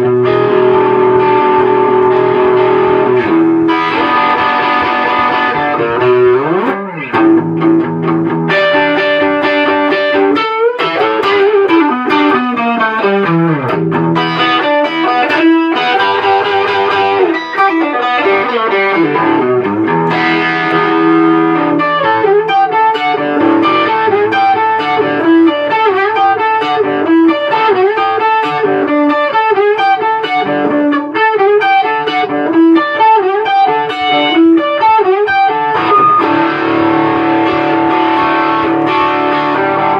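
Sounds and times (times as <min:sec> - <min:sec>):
distorted electric guitar: 0:00.0 - 0:39.9.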